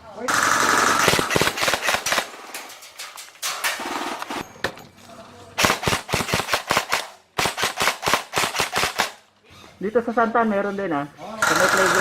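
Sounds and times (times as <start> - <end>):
airsoft guns firing: 0.3 - 2.7, 5.6 - 9.3, 11.4 - 12.0.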